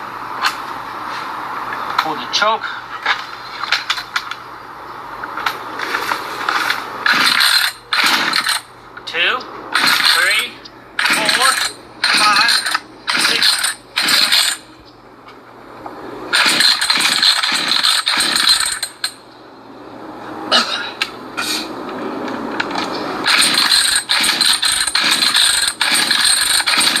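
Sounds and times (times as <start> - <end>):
chainsaw starter cord pulls: 7.1 - 8.6, 9.8 - 10.4, 11.0 - 14.6, 16.4 - 18.9, 23.3 - 27.0.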